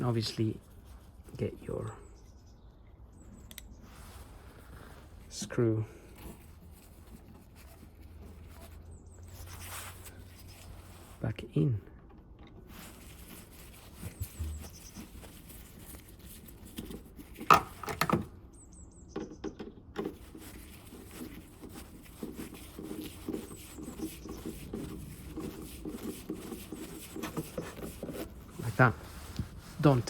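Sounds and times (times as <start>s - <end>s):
screw clicks and knocks: 16.8s - 18.3s, 19.1s - 20.4s
screw ticking and scraping: 19.2s - 28.4s.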